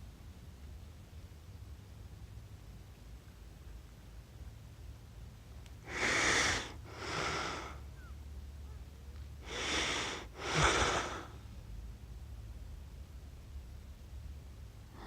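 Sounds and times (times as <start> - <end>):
person snoring: 9.5 - 11.3.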